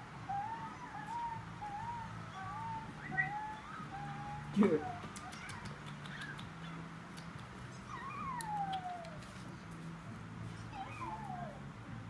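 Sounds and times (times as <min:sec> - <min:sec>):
recorded puppy whining: 0:00.2 - 0:06.8, 0:07.7 - 0:09.2, 0:10.6 - 0:11.7.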